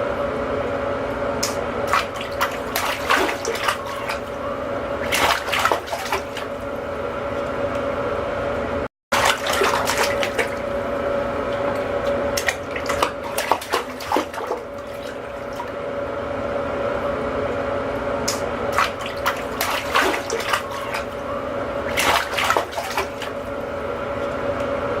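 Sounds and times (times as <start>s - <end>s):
splashing in bathwater: 1.4s - 6.9s, 9.1s - 15.9s, 18.3s - 23.8s
water running into bathtub: 1.4s - 7.5s, 9.1s - 16.1s, 18.3s - 24.4s.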